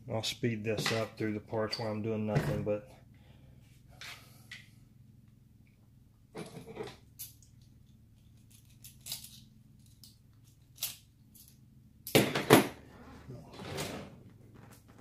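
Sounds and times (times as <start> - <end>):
tools and parts rattling on workbench: 0.7 - 2.7, 6.4 - 7.5, 8.2 - 12.8.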